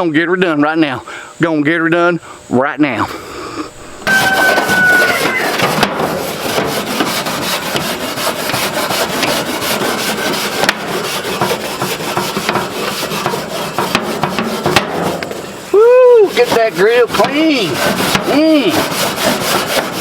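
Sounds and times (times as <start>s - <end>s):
grill grate scraping: 3.4s - 20.0s
brief squeal: 3.8s - 5.6s.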